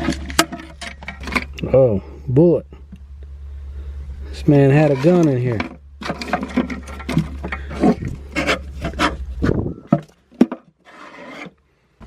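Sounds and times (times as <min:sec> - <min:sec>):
rummaging through loose items: 0:00.0 - 0:01.6, 0:04.9 - 0:11.5.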